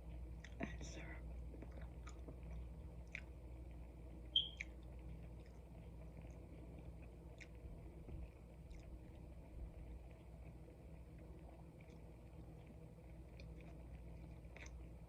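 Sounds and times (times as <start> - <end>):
person chewing food: 1.5 - 3.4, 4.6 - 9.3, 11.8 - 15.0.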